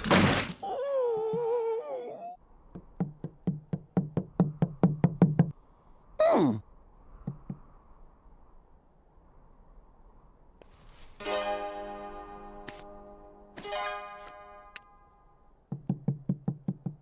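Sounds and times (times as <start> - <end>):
hollow cartoon knocks: 2.7 - 5.6, 15.7 - 17.0.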